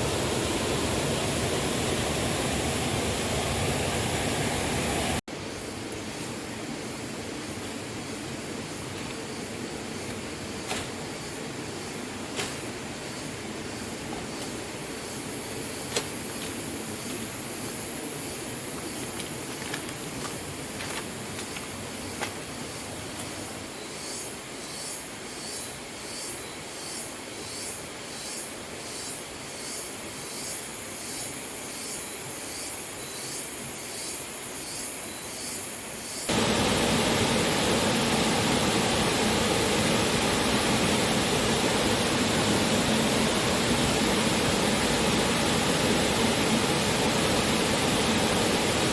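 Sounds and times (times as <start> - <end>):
waterfall rushing: 0.0 - 5.2, 36.3 - 48.9
forest background hiss: 0.0 - 48.9.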